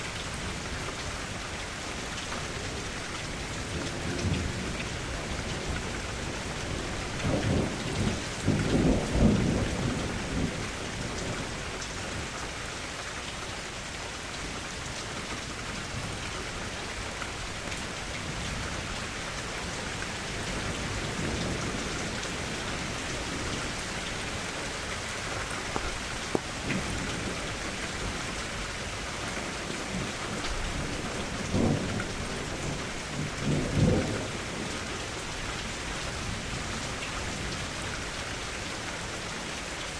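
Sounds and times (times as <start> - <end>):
rain hissing: 15.5 - 39.8.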